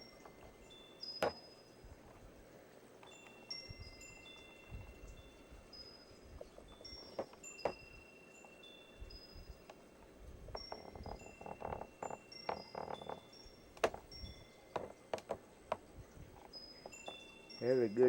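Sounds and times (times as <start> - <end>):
wind chimes ringing: 0.0 - 18.0
soft knocks and clicks: 1.2 - 1.4, 6.4 - 7.8, 10.5 - 14.1, 14.7 - 17.2.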